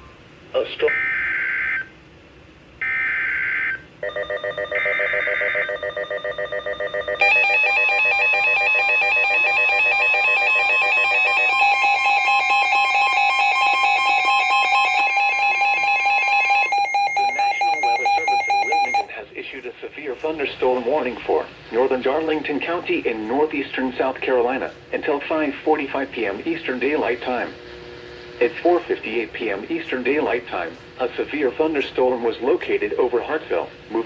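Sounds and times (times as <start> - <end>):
steady warning alarm tone: 0.9 - 1.9, 2.8 - 19.1, 20.2 - 34.0
fast-pulsing alarm beeps: 2.8 - 19.1
digital data screeches: 15.1 - 19.1.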